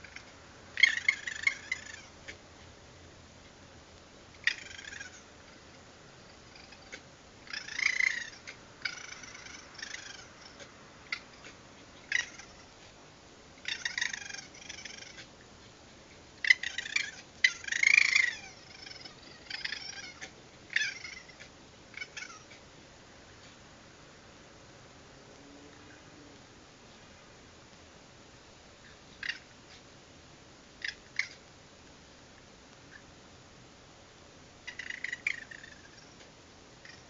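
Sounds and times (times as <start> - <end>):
raccoons squalling and chittering: 0.0 - 2.4, 4.3 - 13.0, 13.6 - 22.7, 28.9 - 29.8, 30.8 - 31.5, 34.6 - 37.0.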